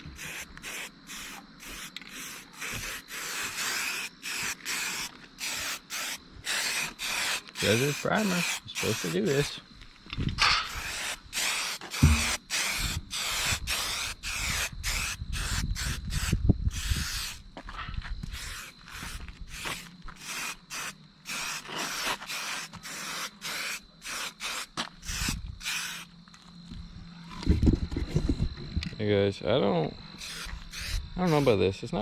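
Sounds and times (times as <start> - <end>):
aerosol spray can hissing: 0.0 - 9.6, 10.7 - 17.4, 18.3 - 26.1, 30.2 - 31.6.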